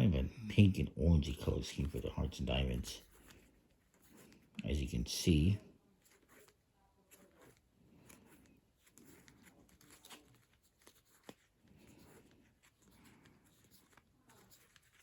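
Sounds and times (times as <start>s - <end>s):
playing cards rustling and clicking: 7.2s - 15.0s.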